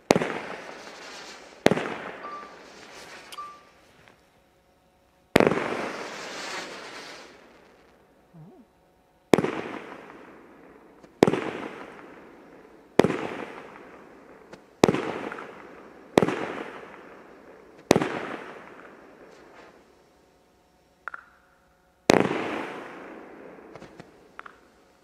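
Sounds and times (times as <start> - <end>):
fireworks bangs with echo: 0.0 - 3.6, 9.3 - 17.1.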